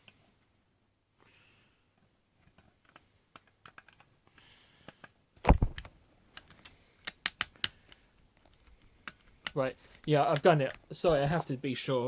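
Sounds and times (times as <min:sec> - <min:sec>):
small clicks and taps of pistol parts: 0:02.4 - 0:04.1, 0:04.8 - 0:10.9
sharp clicks: 0:04.9 - 0:10.8.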